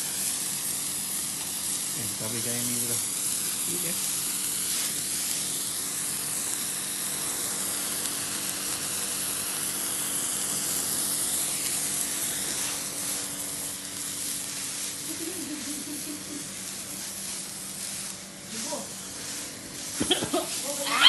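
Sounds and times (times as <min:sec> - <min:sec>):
firework hissing: 0:00.0 - 0:21.0
faint crackles: 0:10.6 - 0:21.0.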